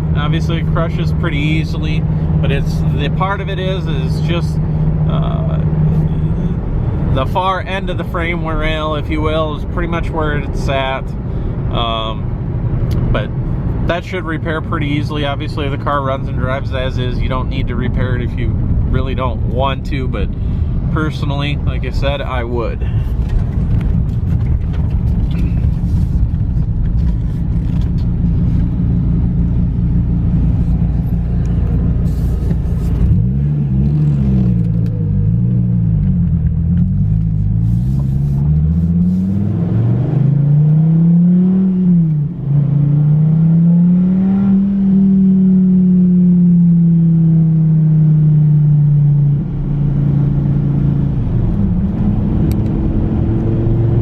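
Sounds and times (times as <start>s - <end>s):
road noise: 0.0s - 54.0s
car engine revving: 14.8s - 54.0s.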